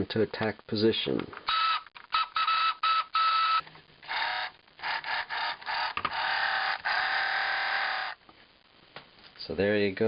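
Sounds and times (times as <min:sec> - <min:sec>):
toy motor buzzing laser bursts: 0:01.5 - 0:08.2.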